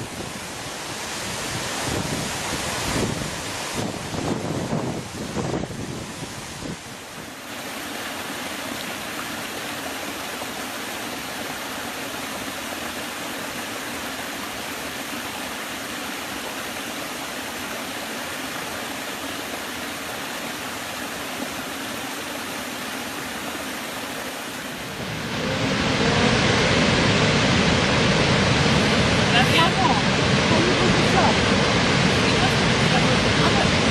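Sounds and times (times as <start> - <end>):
running water rushing: 0.0 - 33.9.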